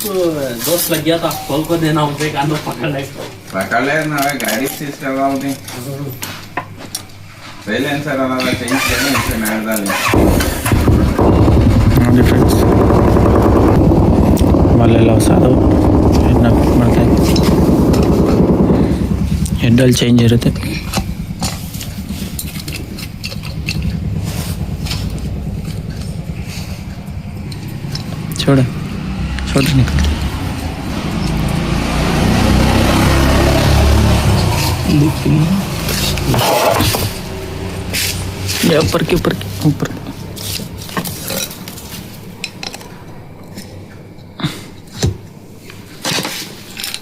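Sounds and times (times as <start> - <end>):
sharp knocks: 10.1 - 26.3
low rumble: 10.1 - 36.2.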